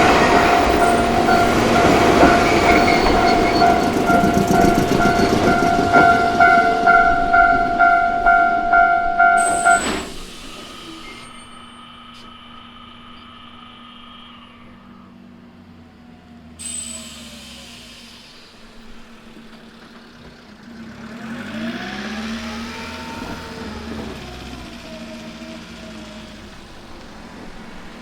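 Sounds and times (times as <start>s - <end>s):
vehicle motor revving: 12.2s - 27.5s.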